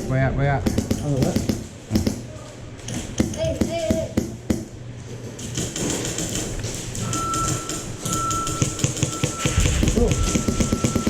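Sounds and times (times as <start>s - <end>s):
scattered clicks and taps: 2.9s - 4.6s, 5.2s - 11.0s
electronic beeper beeps: 7.0s - 11.0s.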